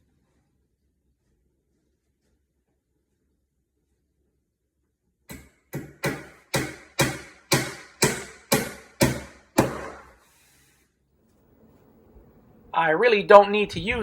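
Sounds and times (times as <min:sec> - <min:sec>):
hammer blows ringing: 0:05.8 - 0:10.1.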